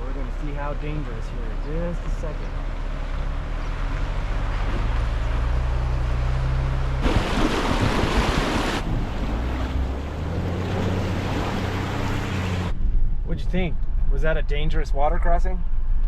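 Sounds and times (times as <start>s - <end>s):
water splashing against vehicle: 0.0s - 12.7s
vehicle engine running: 0.0s - 14.1s.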